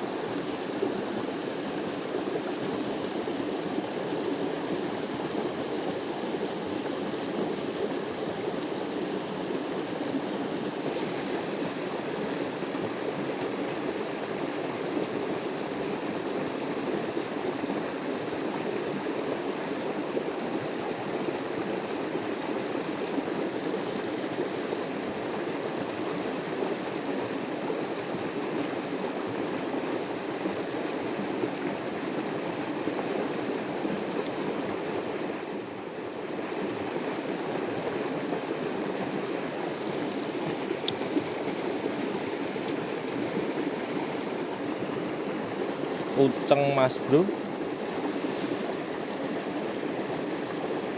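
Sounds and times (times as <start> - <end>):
river water rushing: 0.0 - 50.9.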